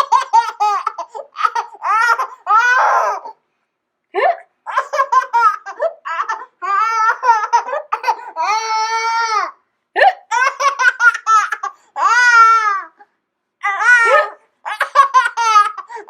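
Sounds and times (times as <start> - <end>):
child laughing: 0.0 - 3.3, 13.6 - 16.0.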